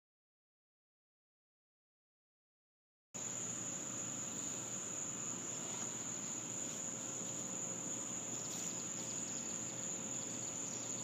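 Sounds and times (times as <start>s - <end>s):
crickets trilling: 3.2s - 11.0s.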